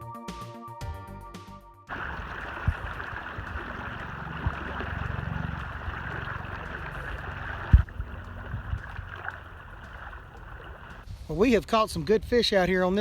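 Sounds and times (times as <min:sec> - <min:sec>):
low thumps and bumps: 0:01.9 - 0:11.0
river water rushing: 0:01.9 - 0:11.0.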